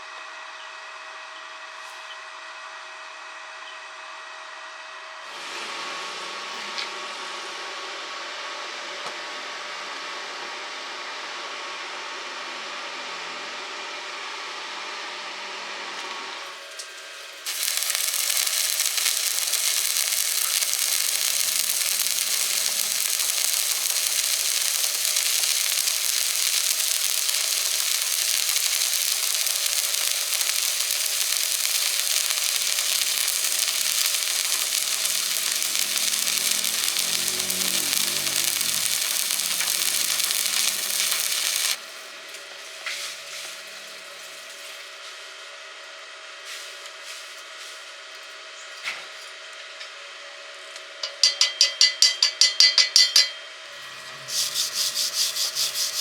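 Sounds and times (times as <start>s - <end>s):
electric arc welding: 16.4s - 42.2s, 53.8s - 56.0s.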